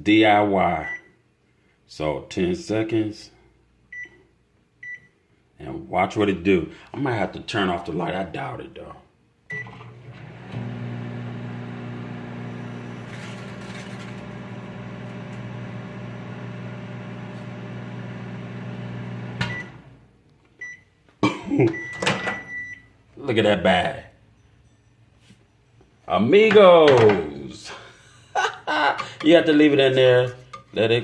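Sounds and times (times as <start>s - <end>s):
microwave beep: 3.9s - 4.2s, 4.8s - 5.1s, 9.5s - 13.5s, 14.3s - 19.9s, 20.6s - 20.9s, 21.7s - 22.9s
microwave oven humming: 9.5s - 20.1s.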